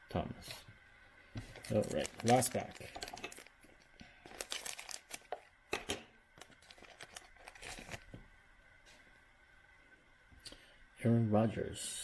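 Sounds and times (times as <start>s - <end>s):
wrapper tearing and crinkling: 1.6s - 3.6s, 4.3s - 5.4s, 6.4s - 8.1s.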